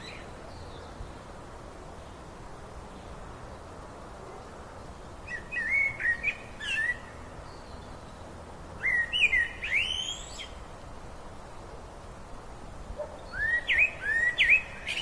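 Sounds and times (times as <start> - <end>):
songbird singing whistled notes: 0.0 - 1.2, 5.2 - 10.6, 13.0 - 15.0
river water rushing: 0.0 - 15.0.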